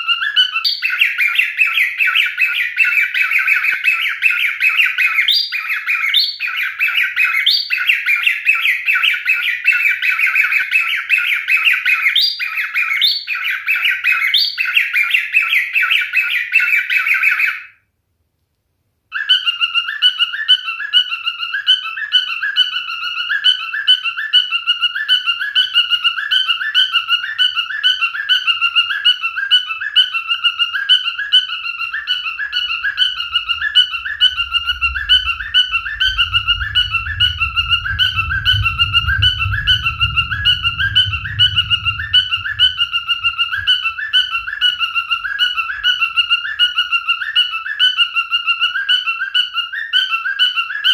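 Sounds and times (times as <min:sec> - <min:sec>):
cockatiel chirping and warbling: 0:00.0 - 0:17.7, 0:19.1 - 0:50.9
whistled chirps: 0:19.1 - 0:50.9
low rumble: 0:32.2 - 0:46.2.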